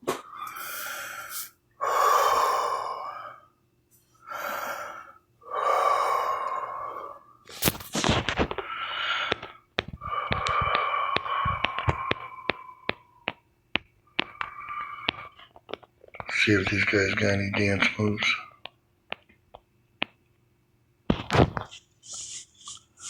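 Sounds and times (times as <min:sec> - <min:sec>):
person breathing heavily: 0:00.0 - 0:03.6, 0:04.2 - 0:18.7
sharp clicks and taps: 0:08.0 - 0:18.0, 0:18.6 - 0:20.2.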